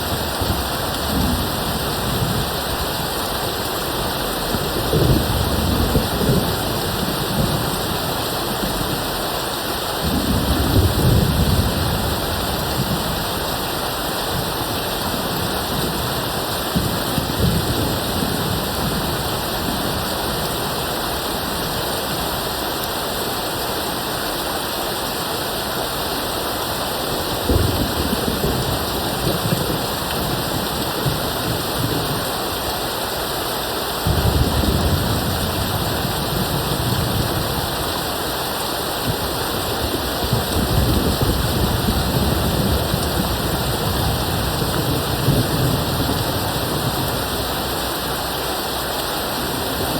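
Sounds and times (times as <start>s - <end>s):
rain pouring: 0.0s - 49.9s
distant thunder rumbling: 0.1s - 3.2s, 4.1s - 9.0s, 27.3s - 32.3s, 34.0s - 38.1s, 38.9s - 48.2s.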